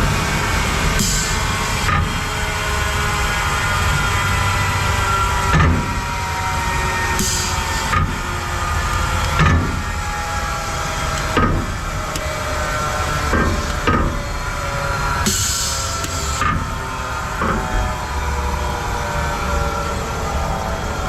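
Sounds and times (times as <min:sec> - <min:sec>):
sharp knocks: 0:11.2 - 0:12.3, 0:13.2 - 0:14.3.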